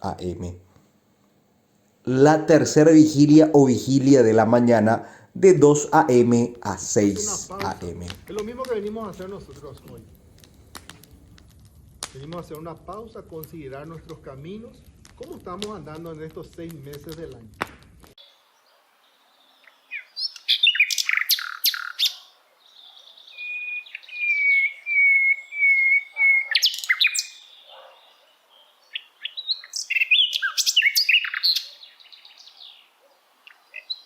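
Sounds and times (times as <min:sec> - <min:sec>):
birds chirping: 0:02.1 - 0:11.1, 0:18.2 - 0:34.0
bird whistling repeated notes: 0:19.9 - 0:22.3, 0:23.1 - 0:28.0, 0:28.9 - 0:32.5.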